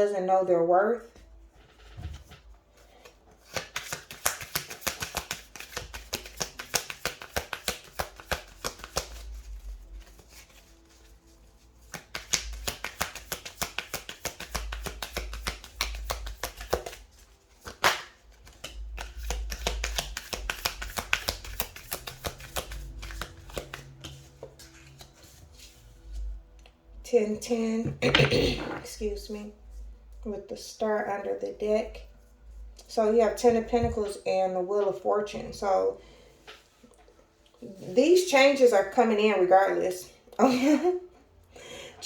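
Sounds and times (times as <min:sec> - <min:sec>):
cards being shuffled by hand: 0:01.8 - 0:26.3.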